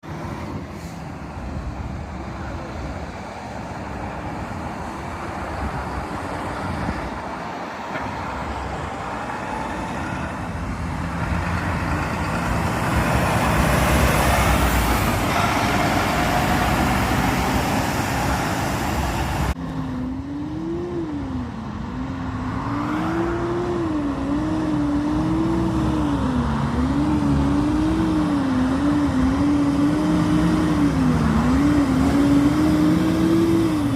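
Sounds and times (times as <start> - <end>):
diesel truck engine running: 8.2 - 22.1.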